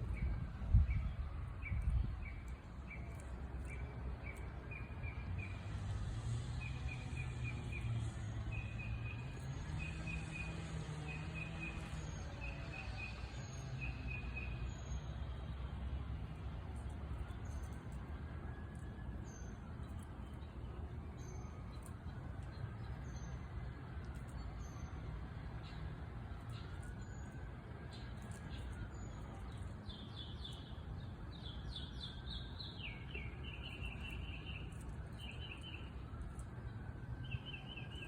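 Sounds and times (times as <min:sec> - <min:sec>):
steady low rumble: 0:00.0 - 0:05.6.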